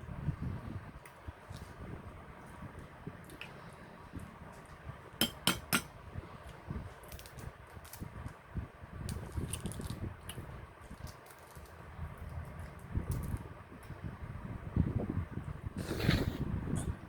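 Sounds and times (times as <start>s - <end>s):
tableware clinking: 5.2s - 5.9s.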